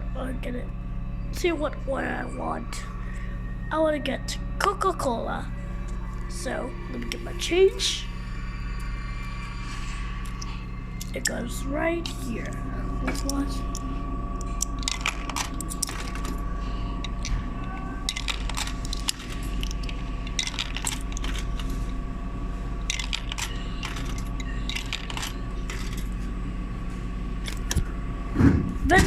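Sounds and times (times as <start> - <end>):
vending machine electrical hum: 0.0 - 29.0
coins clinking into coin slot: 18.1 - 21.5, 22.9 - 26.1.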